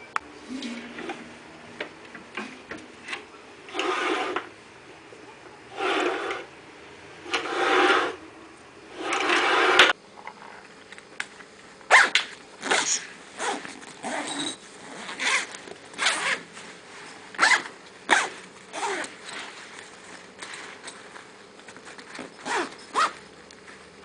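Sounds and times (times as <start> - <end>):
rasping scrapes: 3.7 - 4.5, 5.7 - 6.5, 7.3 - 8.2, 9.0 - 10.0.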